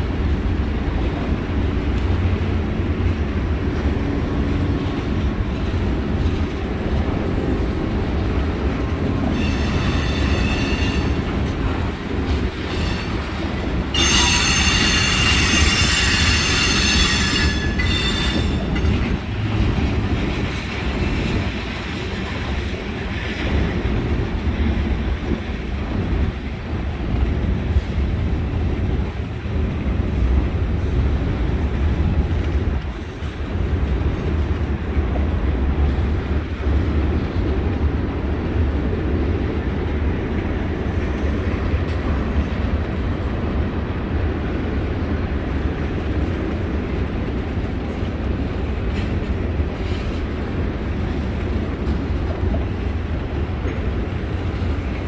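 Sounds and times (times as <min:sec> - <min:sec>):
train wheels rumbling on rails: 0:00.0 - 0:55.0
high wheel squeal: 0:09.3 - 0:11.3, 0:12.7 - 0:19.0.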